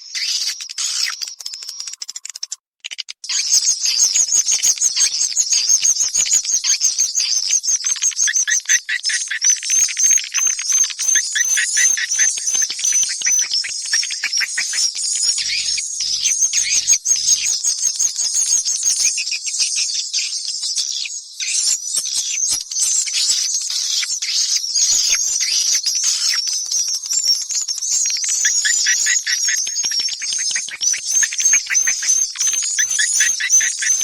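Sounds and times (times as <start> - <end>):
swiftlet chirps and twitters: 8.4 - 19.2, 24.2 - 34.0.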